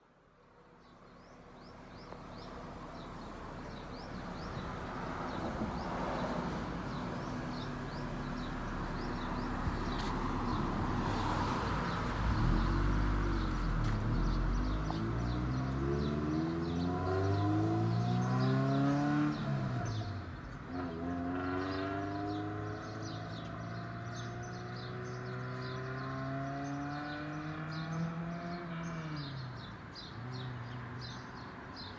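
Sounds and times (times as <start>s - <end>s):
car engine revving: 6.0s - 20.0s.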